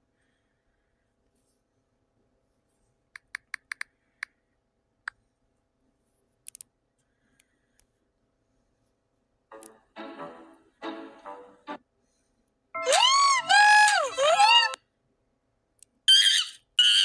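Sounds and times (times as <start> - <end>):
sharp clicks: 3.2 - 4.4, 6.5 - 6.7.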